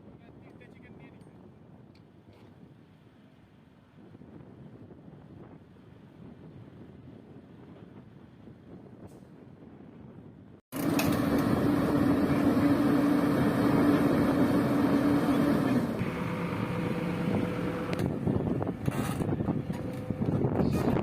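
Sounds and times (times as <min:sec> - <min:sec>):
diesel engine running under load: 0:10.7 - 0:21.0.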